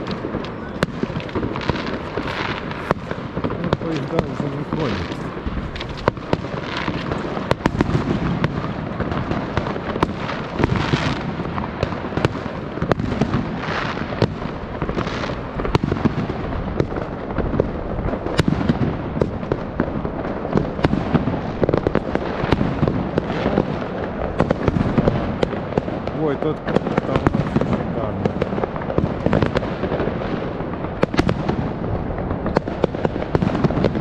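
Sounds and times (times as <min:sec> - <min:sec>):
fireworks bangs: 0:00.0 - 0:34.0
fireworks crackling: 0:00.0 - 0:34.0.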